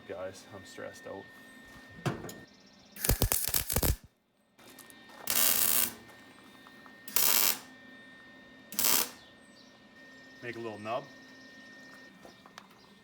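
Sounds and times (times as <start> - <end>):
welding arc crackling: 3.0 - 4.1, 4.8 - 6.0, 7.1 - 7.7, 8.8 - 9.2.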